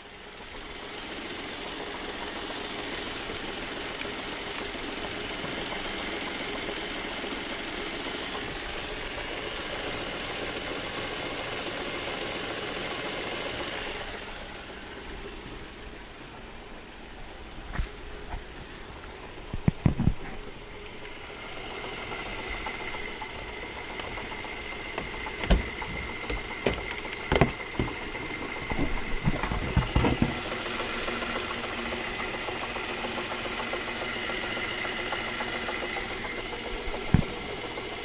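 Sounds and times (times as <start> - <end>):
car engine running: 0.0 - 38.0
compressor knocking: 22.0 - 30.9, 31.5 - 38.0.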